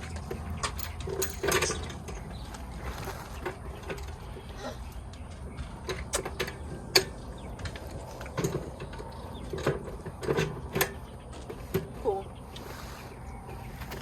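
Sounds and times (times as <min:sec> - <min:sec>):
metal parts clicking and clinking: 0:00.0 - 0:04.4.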